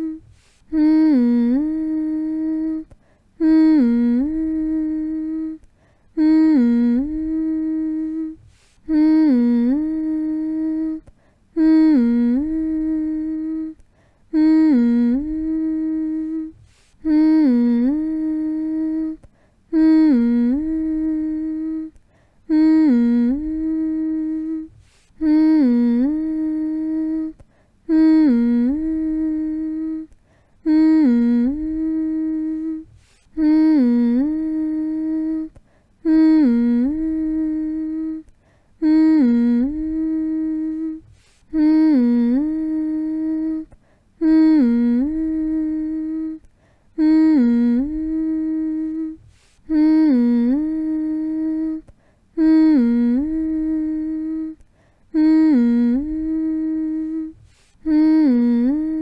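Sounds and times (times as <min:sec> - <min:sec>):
person humming: 0:00.0 - 0:59.0.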